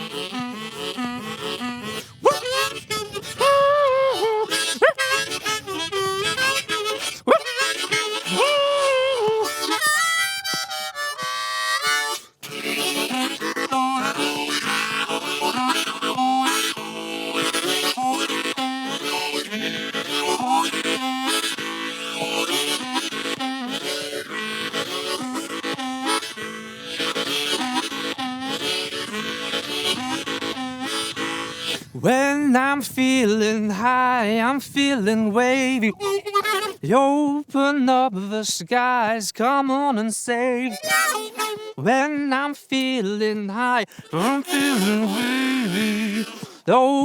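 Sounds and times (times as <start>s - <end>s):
harmonica playing: 0.0s - 47.0s
person singing: 0.0s - 47.0s.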